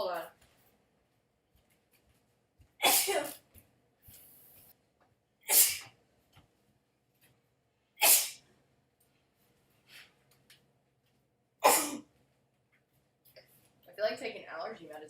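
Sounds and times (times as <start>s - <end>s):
woman sneezing: 2.8s - 3.4s, 5.5s - 5.9s, 8.0s - 8.4s, 11.6s - 12.0s.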